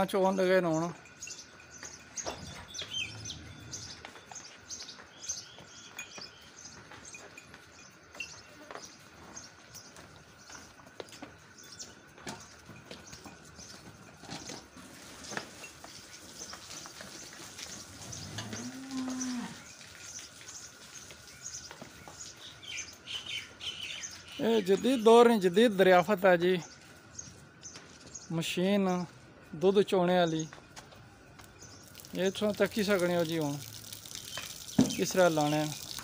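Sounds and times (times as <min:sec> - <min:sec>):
small birds chirping: 0:00.8 - 0:36.0
cow mooing: 0:18.0 - 0:19.7.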